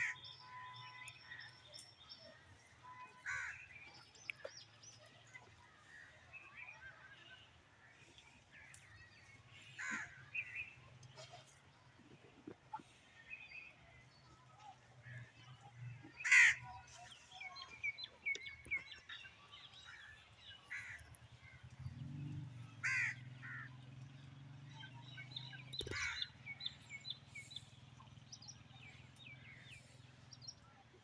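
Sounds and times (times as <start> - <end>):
small birds chirping: 0.0 - 31.0
loud harsh bird calls: 16.2 - 16.7, 22.8 - 23.8, 25.2 - 27.8.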